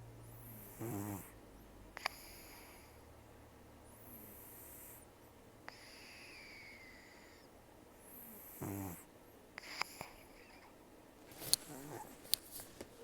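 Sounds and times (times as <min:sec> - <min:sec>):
cat snoring: 0:00.2 - 0:01.4, 0:02.0 - 0:03.0, 0:03.9 - 0:05.0, 0:05.7 - 0:10.7, 0:11.4 - 0:12.2.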